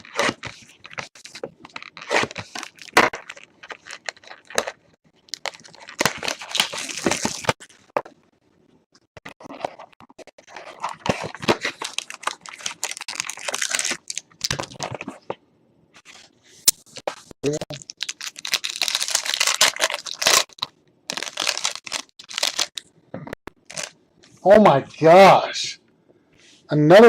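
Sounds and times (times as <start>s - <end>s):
wrappers crinkling and tearing: 0.0s - 7.9s, 9.5s - 15.1s, 17.4s - 22.8s, 23.6s - 24.0s.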